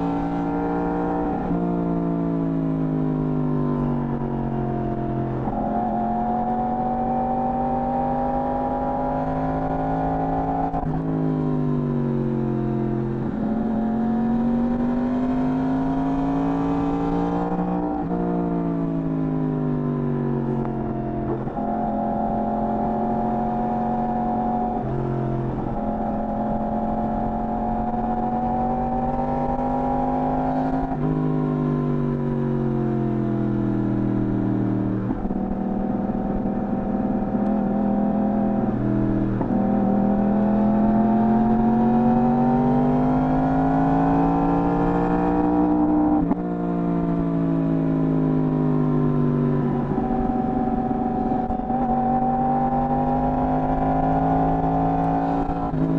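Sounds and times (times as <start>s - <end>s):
motorcycle engine revving: 20.2s - 32.4s, 33.2s - 46.4s, 47.1s - 55.9s.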